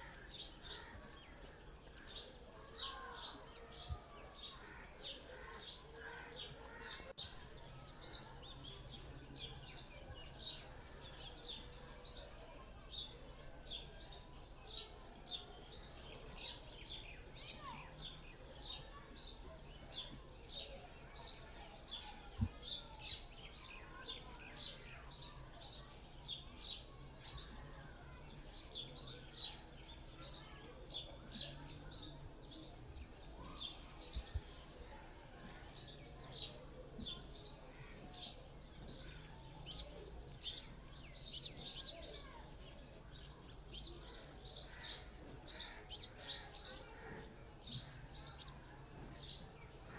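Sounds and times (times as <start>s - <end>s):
small bird chirping: 2.0s - 12.3s, 13.8s - 19.4s, 35.4s - 49.7s.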